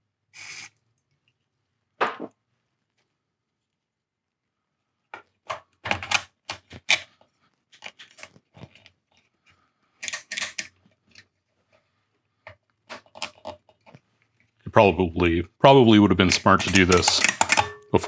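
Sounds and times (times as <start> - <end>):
tube pins clicking in socket: 16.3 - 17.9.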